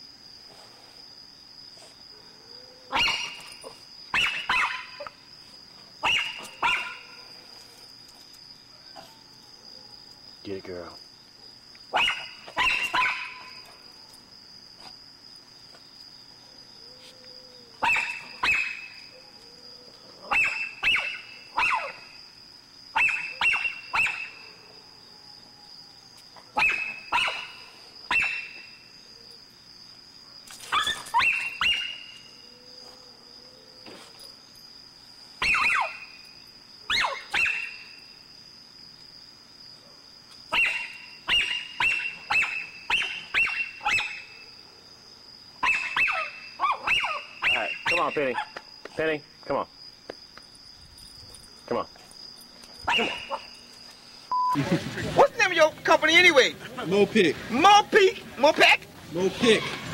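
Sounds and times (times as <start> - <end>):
crickets chirring: 0.0 - 59.9
small dog yapping: 2.8 - 5.2, 6.0 - 7.2, 11.9 - 13.6, 17.8 - 19.0, 20.2 - 22.1, 22.9 - 24.3, 26.4 - 28.6, 30.6 - 32.0, 35.4 - 36.1, 36.9 - 37.8, 40.5 - 44.4, 45.6 - 48.6, 52.8 - 53.5.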